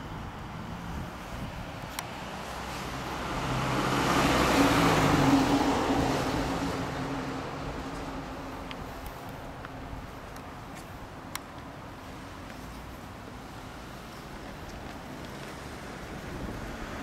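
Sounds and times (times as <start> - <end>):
tyre and road noise: 0.0 - 17.0
vehicle engine passing: 2.1 - 10.1.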